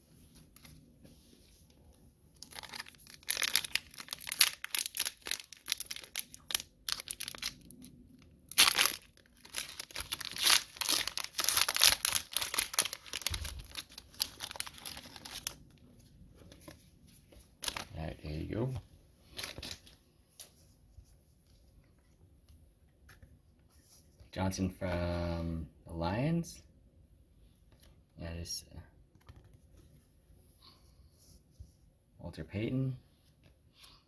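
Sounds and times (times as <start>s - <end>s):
plastic wrapper tearing and crinkling: 2.4s - 15.6s, 17.6s - 18.0s.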